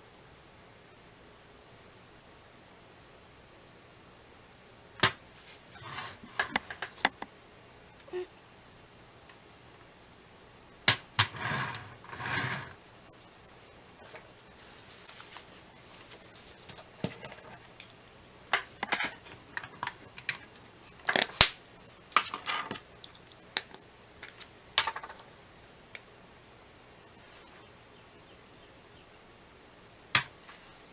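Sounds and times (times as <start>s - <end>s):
clicks and taps of objects: 6.3s - 7.3s, 21.1s - 25.3s.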